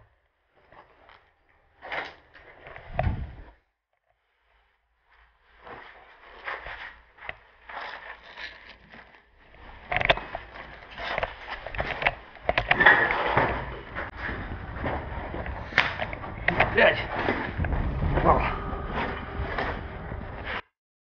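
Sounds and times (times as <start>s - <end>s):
scraping and rustling: 5.2s - 20.6s.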